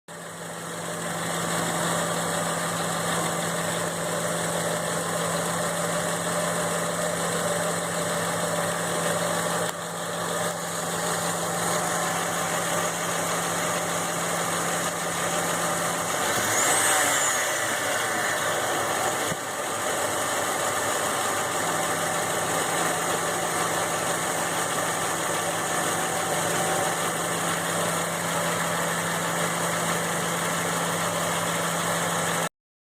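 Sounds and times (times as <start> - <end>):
engine idling with ticking: 0.1 - 16.2, 18.4 - 32.5.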